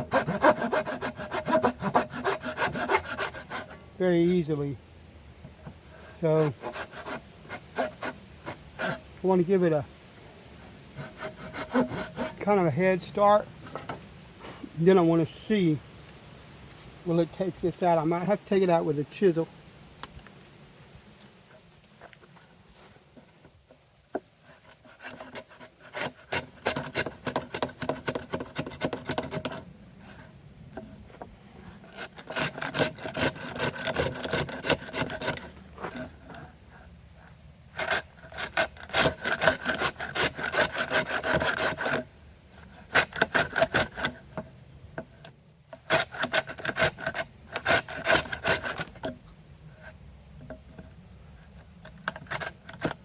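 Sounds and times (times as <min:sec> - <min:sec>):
hand saw cutting wood: 0:00.0 - 0:03.8, 0:06.2 - 0:09.0, 0:11.0 - 0:12.6, 0:24.4 - 0:30.2, 0:31.8 - 0:36.5, 0:37.7 - 0:44.3, 0:45.8 - 0:49.2.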